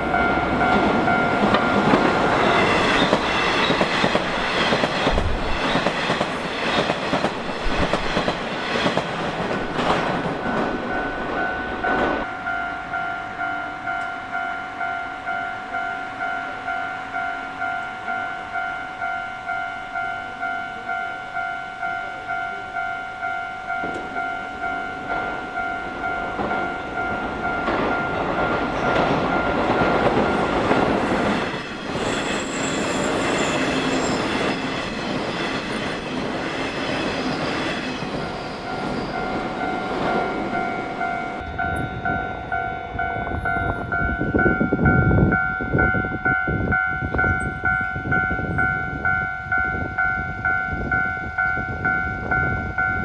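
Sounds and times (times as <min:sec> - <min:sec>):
train wheels clacking on rails: 0:00.0 - 0:12.3, 0:23.7 - 0:41.5
train rushing past: 0:00.0 - 0:13.7, 0:23.8 - 0:46.0
level crossing bell ringing: 0:38.6 - 0:53.0.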